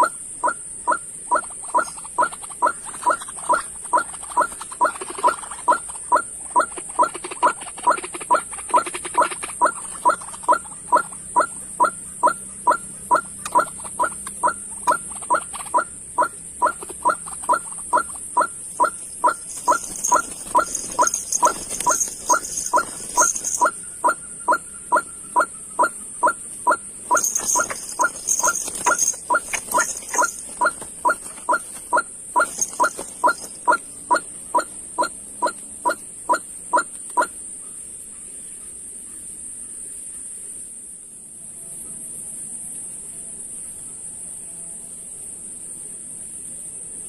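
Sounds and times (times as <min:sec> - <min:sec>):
bird call: 0:00.0 - 0:37.3
high-pitched buzz: 0:10.0 - 0:36.0.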